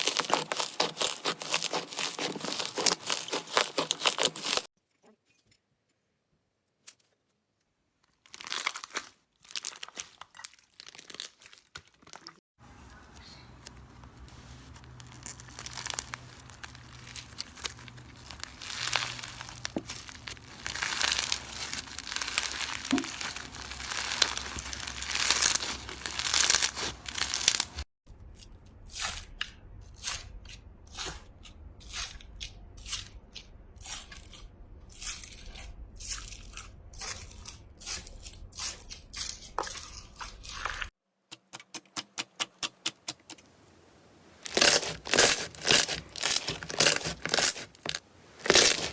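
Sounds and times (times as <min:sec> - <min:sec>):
slime crackling and popping: 0:00.0 - 0:04.7, 0:14.8 - 0:27.8, 0:44.4 - 0:48.9.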